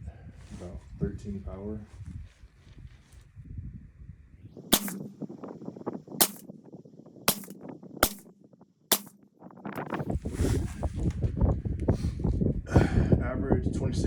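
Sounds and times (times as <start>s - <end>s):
suppressed rifle shots: 4.7s - 5.2s, 6.2s - 6.5s, 7.3s - 8.3s, 8.9s - 9.2s
rifle handling noise: 4.8s - 5.2s, 6.2s - 6.4s, 7.3s - 8.2s, 8.9s - 9.1s.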